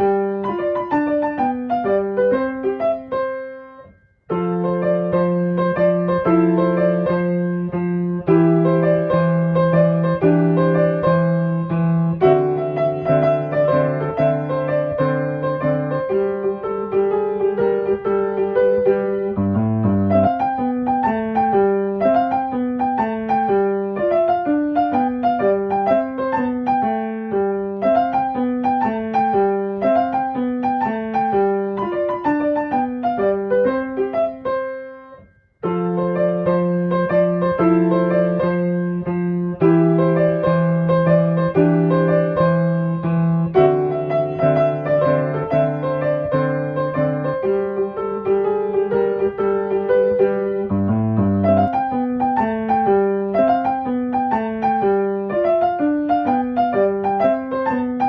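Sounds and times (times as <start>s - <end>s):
piano music: 0.0s - 58.0s.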